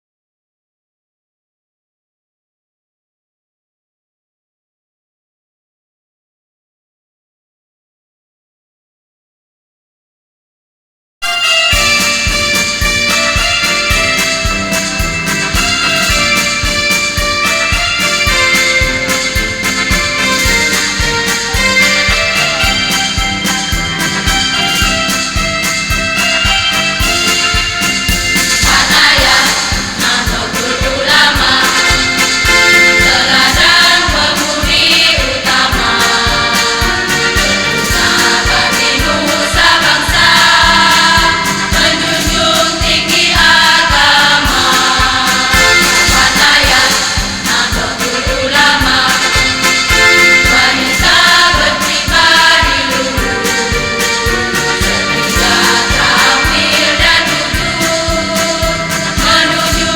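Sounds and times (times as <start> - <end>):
instrumental accompaniment: 11.2 - 59.9
women's choir singing: 28.2 - 59.9.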